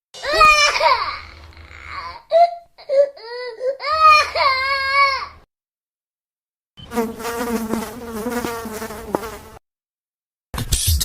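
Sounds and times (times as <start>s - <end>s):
insect buzzing: 6.8s - 9.6s.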